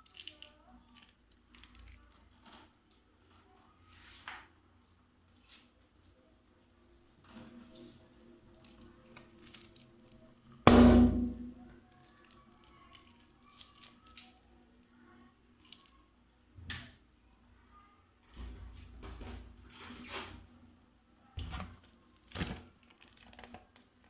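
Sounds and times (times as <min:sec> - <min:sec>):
balloon bursting: 0:10.7 - 0:11.5.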